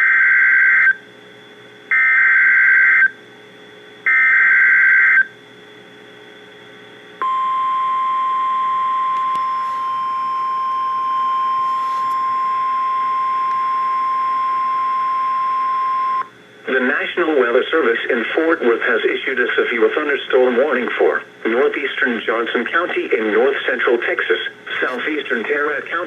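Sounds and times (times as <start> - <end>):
steady warning alarm tone: 1.9 - 3.2, 4.1 - 5.4, 7.2 - 16.3
radio hiss: 16.6 - 26.0.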